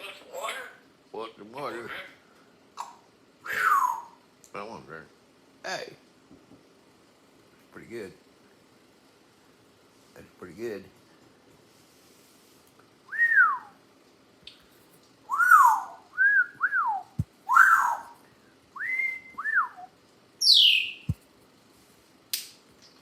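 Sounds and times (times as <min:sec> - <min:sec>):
parrot whistling: 0:03.4 - 0:04.2, 0:13.1 - 0:13.8, 0:15.3 - 0:18.2, 0:18.8 - 0:21.2.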